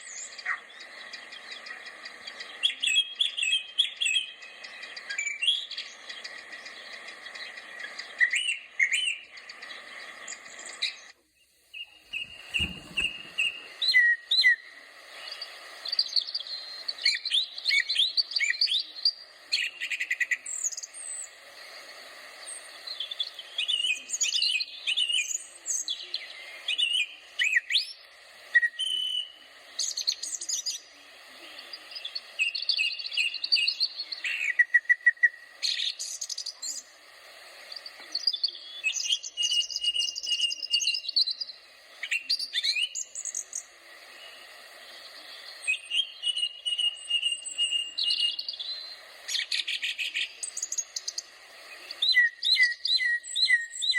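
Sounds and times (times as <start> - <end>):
songbirds chirping and singing: 0.0 - 37.0, 37.7 - 53.9
low thud: 12.1 - 13.6.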